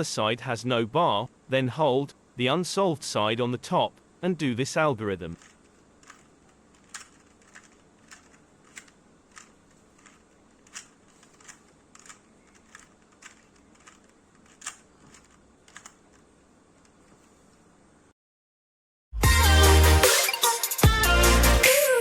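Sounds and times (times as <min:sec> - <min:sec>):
puzzle cube plastic clicks: 0:05.4 - 0:17.0.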